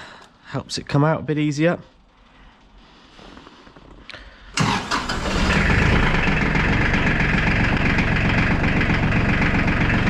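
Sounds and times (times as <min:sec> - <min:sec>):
diesel engine starting and idling: 0:04.5 - 0:10.0.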